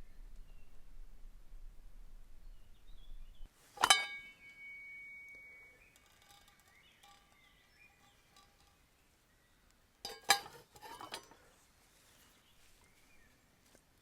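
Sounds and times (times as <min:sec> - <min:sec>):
metallic clink of cookware: 0:03.8 - 0:07.4, 0:10.0 - 0:11.4
light metal clinks: 0:03.8 - 0:08.8, 0:10.0 - 0:11.5.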